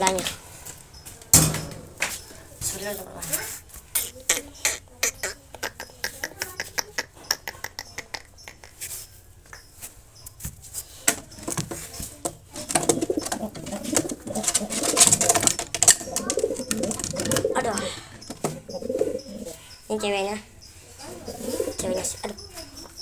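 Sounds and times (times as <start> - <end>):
sharp clicks and knocks: 1.2 - 2.4, 11.1 - 19.4
pigeons cooing: 11.1 - 23.0.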